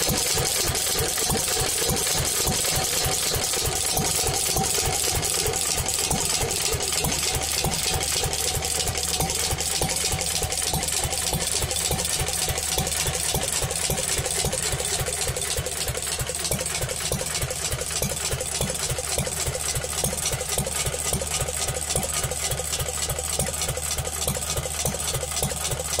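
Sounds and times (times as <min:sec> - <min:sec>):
stationary engine idling: 0:00.0 - 0:26.0.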